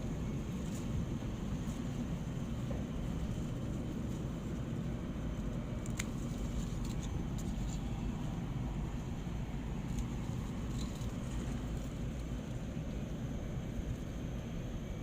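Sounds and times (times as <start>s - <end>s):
low background rumble: 0.0s - 15.0s
scissors snipping stems: 5.6s - 8.0s.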